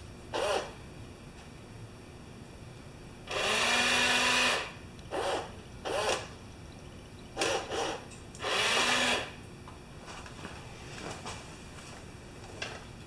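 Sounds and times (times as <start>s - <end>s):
small electric motors running: 0.3s - 0.7s, 3.3s - 6.3s, 7.4s - 9.4s.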